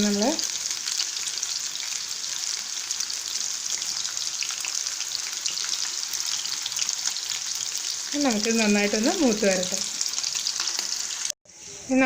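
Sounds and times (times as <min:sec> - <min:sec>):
chicken deep-frying in oil: 0:00.0 - 0:11.4.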